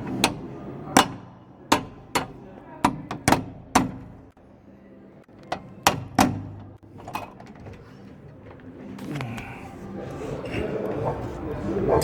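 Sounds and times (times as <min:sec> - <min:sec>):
metal knocks on door latch: 0:00.2 - 0:04.3, 0:05.4 - 0:07.5.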